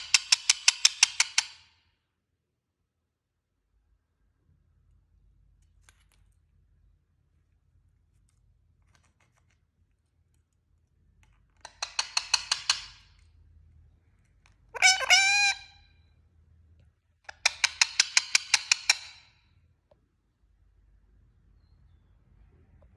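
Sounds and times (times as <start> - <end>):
parrot calling: 14.7 - 16.0.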